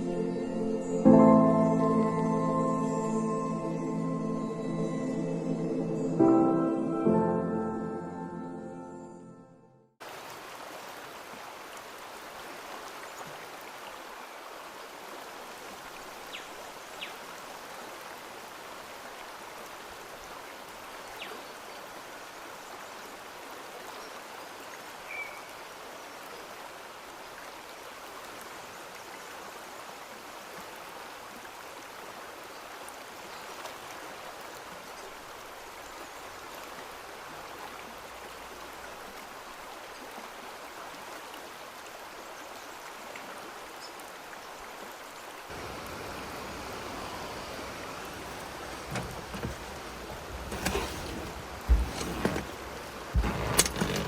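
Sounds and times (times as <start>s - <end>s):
stream flowing: 10.0s - 54.0s.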